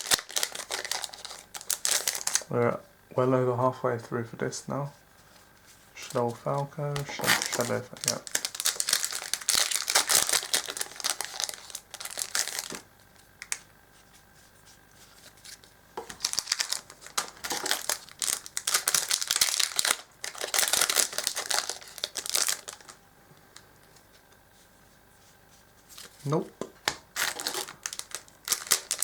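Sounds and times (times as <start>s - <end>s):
foil wrappers tearing and crinkling: 0.0s - 2.5s, 6.0s - 13.6s, 15.3s - 23.0s, 27.0s - 29.0s.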